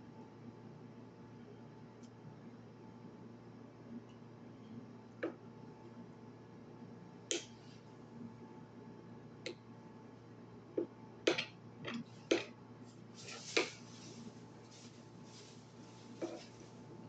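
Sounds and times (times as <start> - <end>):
rustling and crunching: 12.8 - 17.0.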